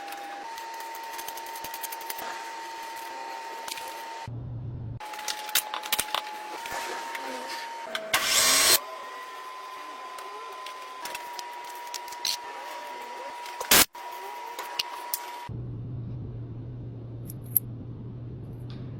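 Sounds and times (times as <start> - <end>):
lathe machine whine: 5.1 - 13.6.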